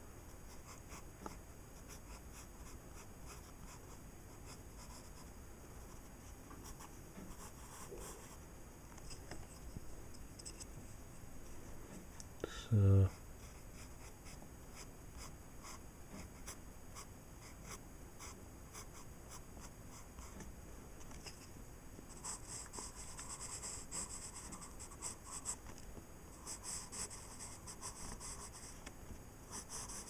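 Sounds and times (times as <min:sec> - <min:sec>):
pencil scratching on paper: 0:00.4 - 0:08.4, 0:13.1 - 0:20.5, 0:22.1 - 0:25.6, 0:26.4 - 0:28.8, 0:29.5 - 0:30.0.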